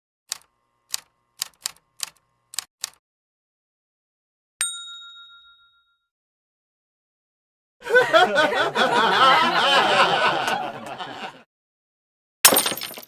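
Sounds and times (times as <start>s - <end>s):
typewriter keystrokes: 0.3s - 3.0s
typewriter bell ding: 4.6s - 6.1s.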